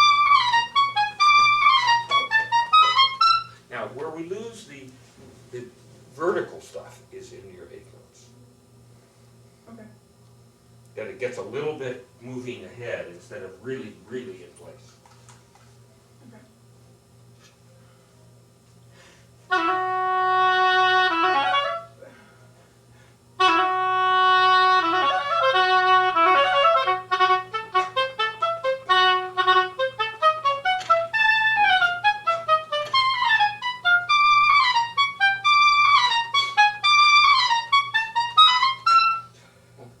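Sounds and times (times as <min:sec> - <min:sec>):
oboe playing: 0:00.0 - 0:03.6, 0:19.5 - 0:22.1, 0:23.4 - 0:39.4.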